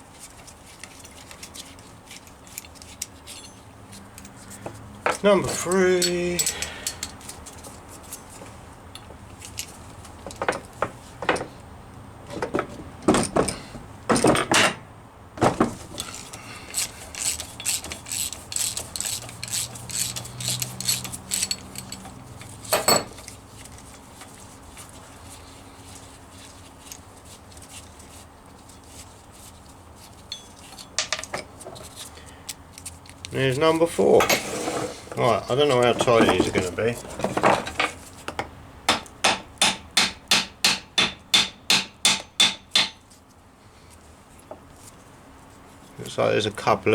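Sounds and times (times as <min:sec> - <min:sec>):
hand tools clinking on metal: 0:02.1 - 0:04.4, 0:05.1 - 0:07.4, 0:16.0 - 0:23.4, 0:30.2 - 0:31.6, 0:35.2 - 0:38.0.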